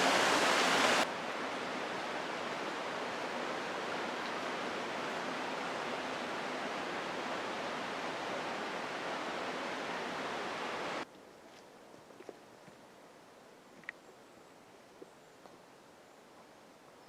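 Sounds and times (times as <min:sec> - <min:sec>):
waterfall rushing: 0:00.0 - 0:01.1.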